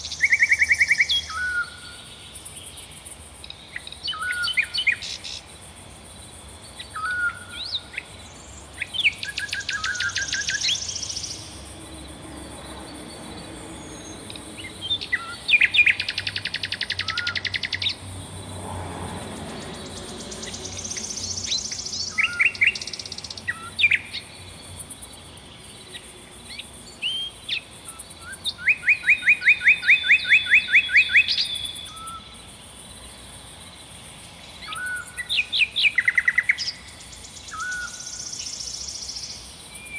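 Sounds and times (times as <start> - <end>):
songbirds trilling: 0.0 - 39.9
faint high hiss: 31.3 - 39.9.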